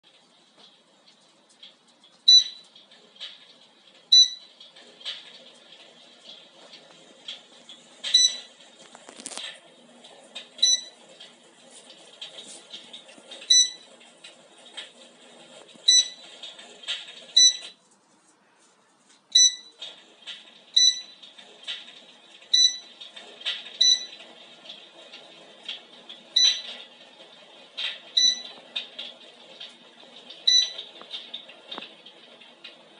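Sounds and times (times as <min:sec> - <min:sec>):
fire crackles and pops effect: 0:00.1 - 0:17.4.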